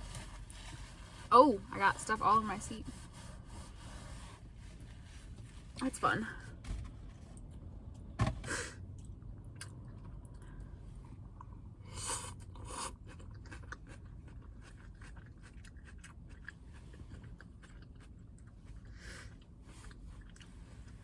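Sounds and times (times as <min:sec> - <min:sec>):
chewing and crunching salad: 0:08.9 - 0:21.0.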